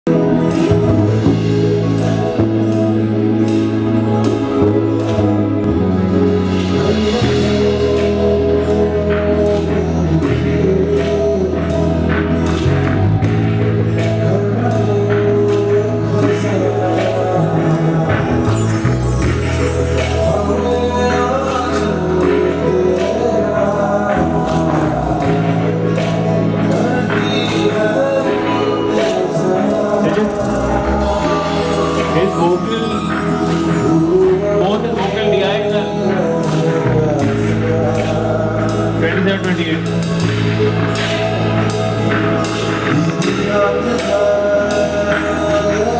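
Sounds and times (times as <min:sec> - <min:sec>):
held bass notes: 0:00.0 - 0:45.9
person singing: 0:00.0 - 0:45.9
percussion hits: 0:00.1 - 0:45.9.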